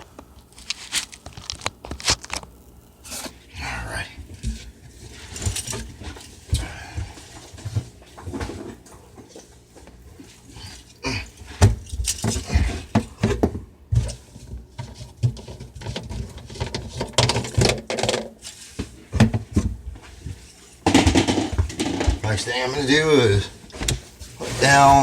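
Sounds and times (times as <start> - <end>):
objects knocking and clicking: 11.6 - 18.4, 20.8 - 22.3.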